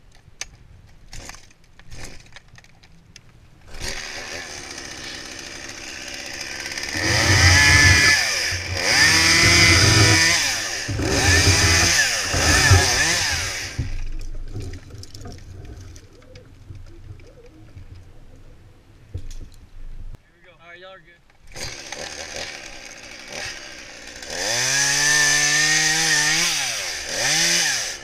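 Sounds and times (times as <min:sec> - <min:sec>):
chainsaw revving: 0:03.7 - 0:14.2, 0:21.5 - 0:28.0
faint clicks and knocks: 0:13.8 - 0:20.1.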